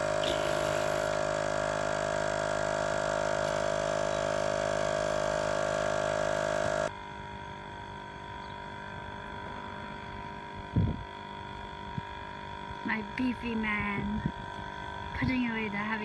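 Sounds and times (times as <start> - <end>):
air compressor hum and whine: 0.0 - 16.0.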